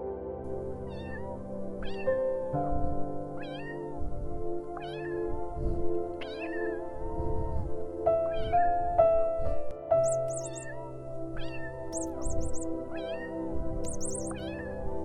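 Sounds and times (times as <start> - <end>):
background music: 0.0 - 15.0
young animal crying: 10.0 - 10.8, 11.4 - 14.8.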